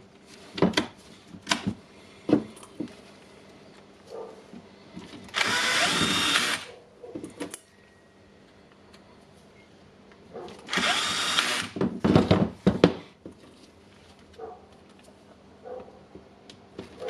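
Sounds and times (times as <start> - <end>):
cordless drill motor whining: 5.3 - 6.7, 10.7 - 11.8.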